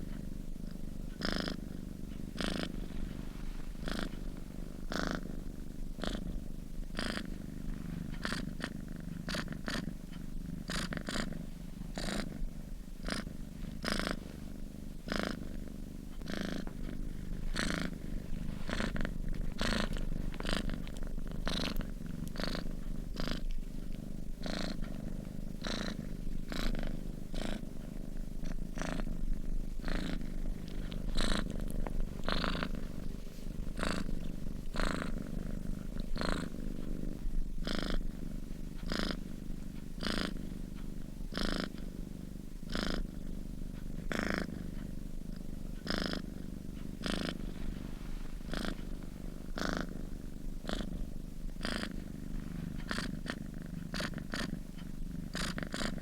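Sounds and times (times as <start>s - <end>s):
cat purring: 0.0s - 56.0s.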